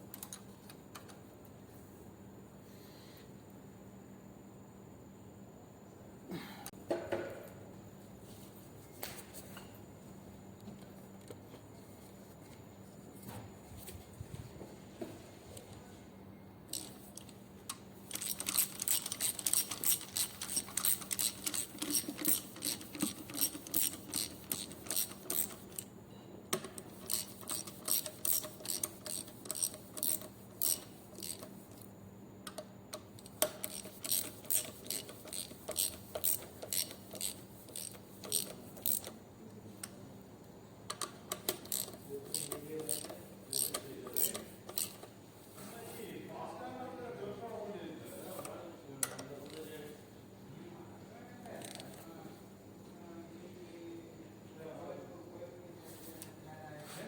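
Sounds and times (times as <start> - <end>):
ratchet wrench clicking: 16.7 - 25.9, 26.6 - 31.9, 32.5 - 39.2, 40.9 - 45.1, 51.6 - 52.0.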